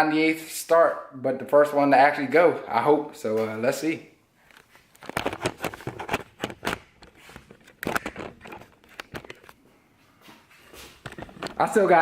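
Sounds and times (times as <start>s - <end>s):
clicks and rattles of handling: 4.5s - 9.6s, 11.0s - 11.7s.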